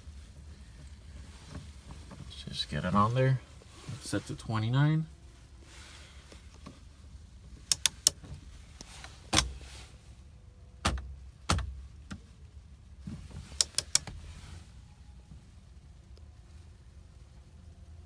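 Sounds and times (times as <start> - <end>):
torque wrench clicks: 7.7 - 8.2, 13.6 - 14.1.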